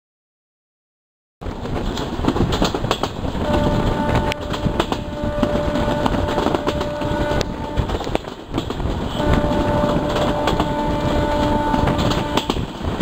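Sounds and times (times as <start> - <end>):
train rumbling at speed: 1.4 - 13.0
locomotive horn chord: 3.4 - 8.0, 9.1 - 12.6
clicks from the track: 11.4 - 12.8.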